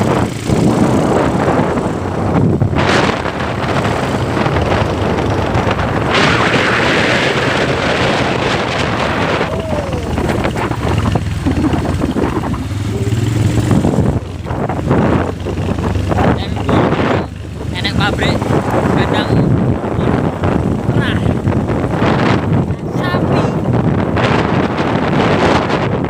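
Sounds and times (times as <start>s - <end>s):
vehicle engine running: 0.0s - 25.4s
wind buffeting microphone: 0.0s - 26.0s.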